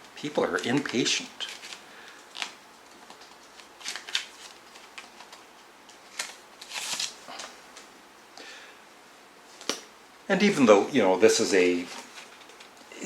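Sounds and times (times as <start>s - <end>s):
paper insert rustling: 0.5s - 7.6s, 11.7s - 12.8s.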